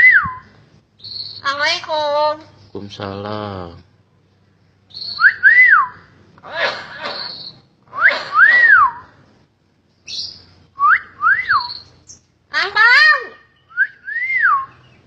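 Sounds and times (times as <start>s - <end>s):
myna whistling: 0.0s - 1.6s, 4.9s - 9.1s, 10.1s - 12.2s, 13.5s - 15.0s
harsh raspy bird calls: 0.6s - 3.2s, 4.6s - 9.3s, 10.0s - 10.7s, 11.5s - 13.8s.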